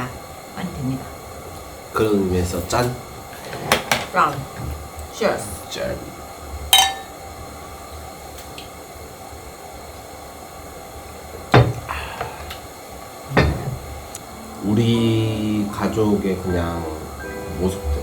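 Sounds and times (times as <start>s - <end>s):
low background hum: 0.0s - 18.0s
cups clinking: 6.8s - 7.2s, 13.3s - 13.9s.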